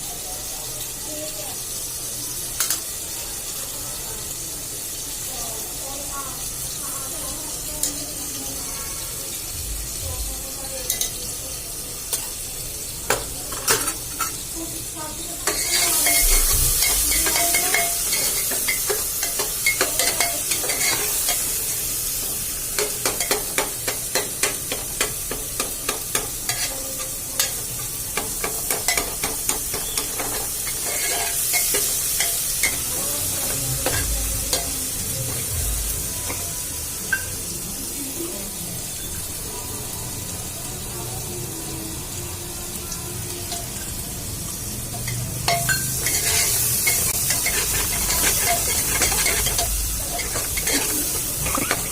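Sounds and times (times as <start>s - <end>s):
food sizzling in hot oil: 0.0s - 51.9s
spoon scraping a metal pot: 15.4s - 21.4s, 26.1s - 26.8s, 28.7s - 32.8s, 45.5s - 51.9s.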